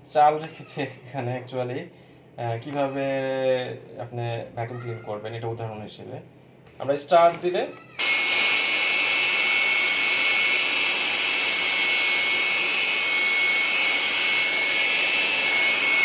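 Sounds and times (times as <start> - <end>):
electric blower whining: 8.0 - 16.0.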